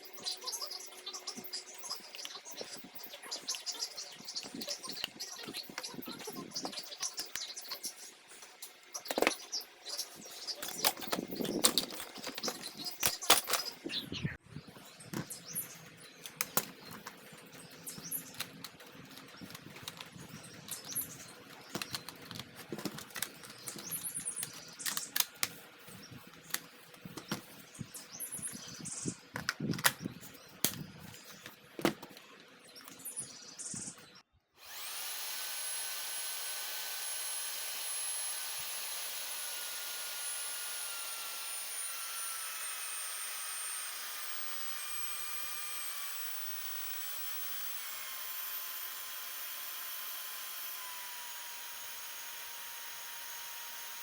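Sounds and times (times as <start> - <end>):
plastic parts clicking and knocking: 8.6 - 9.5, 10.5 - 14.0, 16.2 - 25.6, 26.3 - 27.5, 29.3 - 32.2
electric motor whine: 10.2 - 14.3, 15.0 - 54.0.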